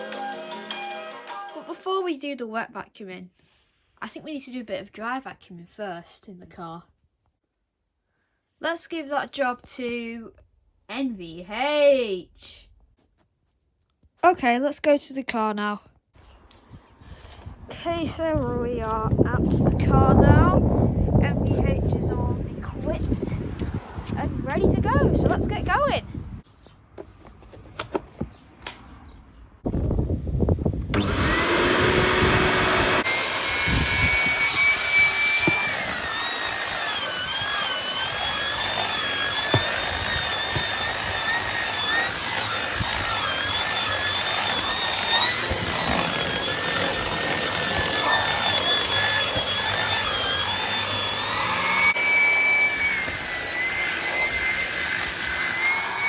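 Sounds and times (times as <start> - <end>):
vacuum cleaner motor whine: 30.9 - 56.0.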